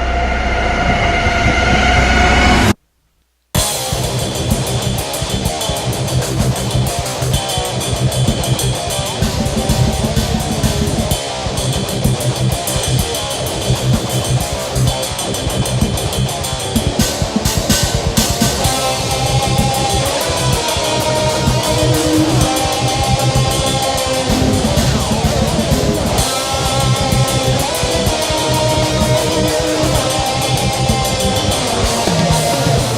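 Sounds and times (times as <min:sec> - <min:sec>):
instrumental rock music: 0:03.6 - 0:32.9.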